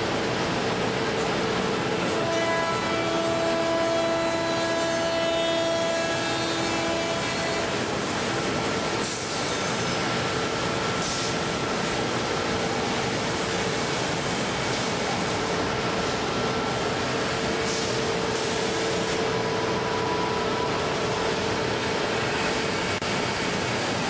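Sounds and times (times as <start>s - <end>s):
constant machining noise: 0.0s - 24.0s.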